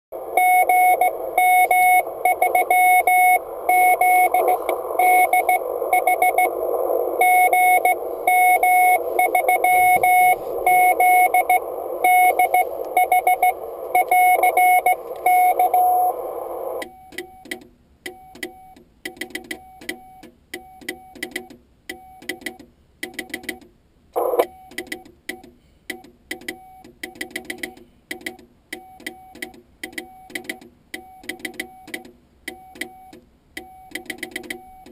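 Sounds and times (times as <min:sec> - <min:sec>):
morse code tone: 0:00.2 - 0:16.8, 0:24.2 - 0:24.5
radio band hiss: 0:00.2 - 0:16.8, 0:24.2 - 0:24.5.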